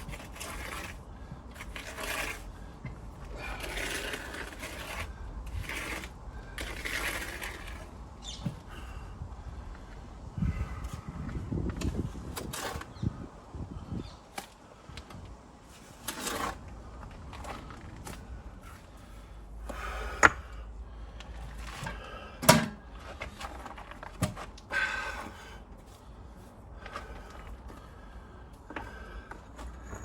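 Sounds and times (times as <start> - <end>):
scraping or rustling: 0.0 - 2.7, 3.3 - 8.0, 11.6 - 13.0, 15.6 - 18.8.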